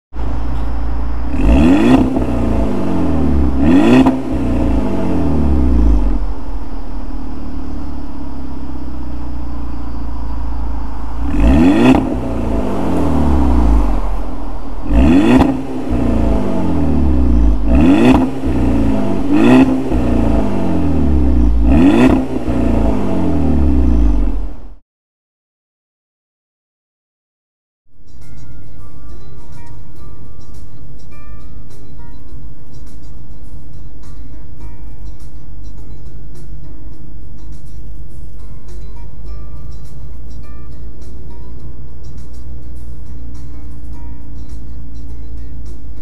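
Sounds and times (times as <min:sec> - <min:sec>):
car engine accelerating hard: 0:00.2 - 0:24.8.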